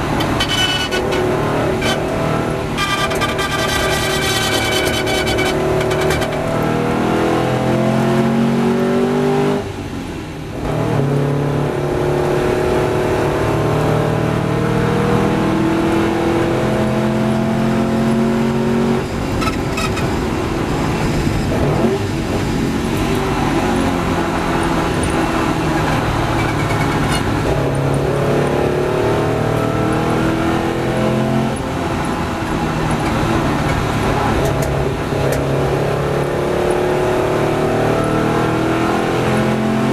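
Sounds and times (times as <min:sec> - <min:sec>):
racing engine accelerating: 0:00.0 - 0:09.7, 0:20.9 - 0:39.9.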